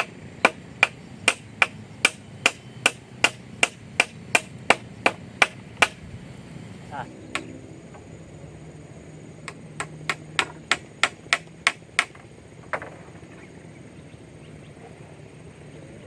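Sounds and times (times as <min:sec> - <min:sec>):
tool striking wood: 0:00.0 - 0:06.0, 0:09.5 - 0:13.0.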